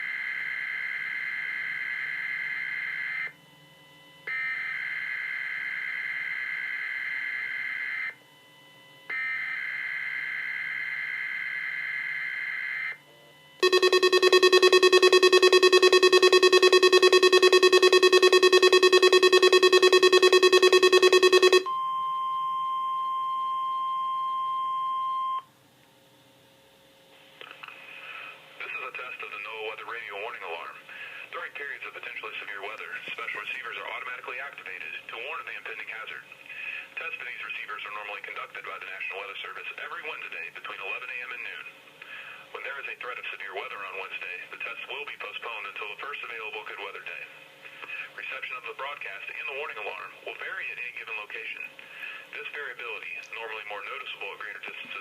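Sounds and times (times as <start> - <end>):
harsh pulsing alarm tone: 13.6 - 21.7
warbling digital header tones: 13.6 - 21.7.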